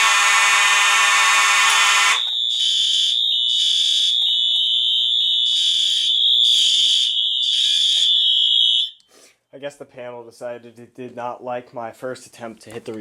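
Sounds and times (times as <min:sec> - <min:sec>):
harsh buzzing alarm: 0:00.0 - 0:09.0
pulsing alarm sounder: 0:00.0 - 0:09.0
steady high-pitched alarm tone: 0:00.0 - 0:09.0.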